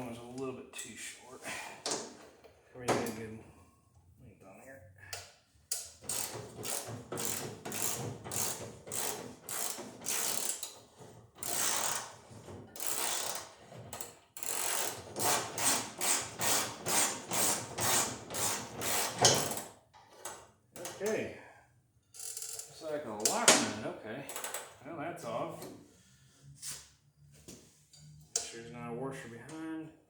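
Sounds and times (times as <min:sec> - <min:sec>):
socket ratchet wrench clicking: 0:05.7 - 0:10.8, 0:11.4 - 0:12.1, 0:12.8 - 0:13.5, 0:14.4 - 0:15.4.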